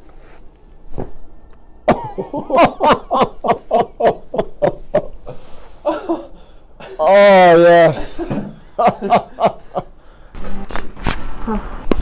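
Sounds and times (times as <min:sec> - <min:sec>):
person laughing: 0:01.9 - 0:07.4, 0:08.0 - 0:09.9.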